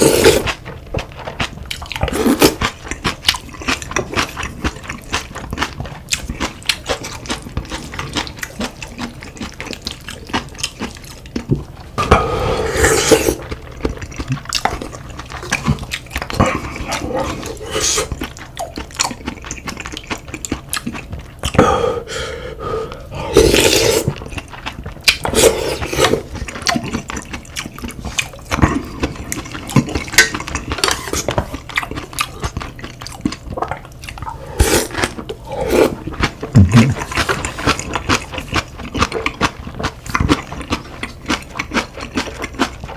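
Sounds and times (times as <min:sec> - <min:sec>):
slurping soup: 0:00.0 - 0:00.6, 0:02.0 - 0:02.7, 0:11.9 - 0:18.3, 0:21.5 - 0:27.2, 0:27.8 - 0:39.2
chewing: 0:00.0 - 0:21.6, 0:22.9 - 0:42.9.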